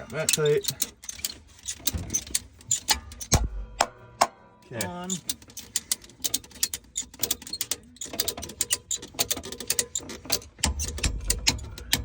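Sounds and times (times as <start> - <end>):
hand ratchet clicking: 0.0 - 3.4, 4.8 - 12.0.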